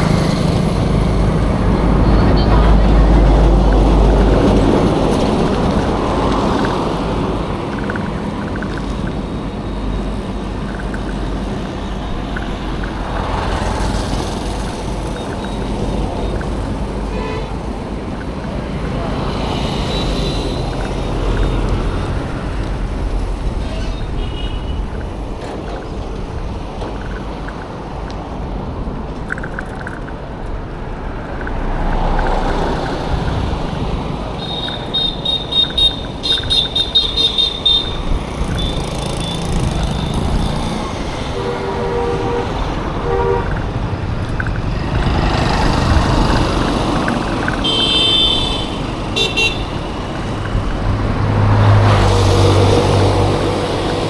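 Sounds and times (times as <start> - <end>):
vehicles passing: 0.0 - 54.0
high-pitched horn beeps: 34.4 - 39.2
engine passing with low hum: 37.3 - 47.6, 49.8 - 54.0
low horn honks: 41.3 - 43.8.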